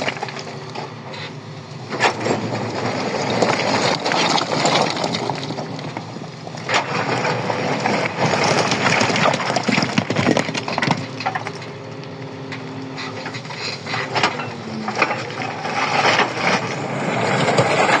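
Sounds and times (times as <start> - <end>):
engine running: 0.0 - 18.0
rock breaking knocks and cracks: 8.3 - 11.6.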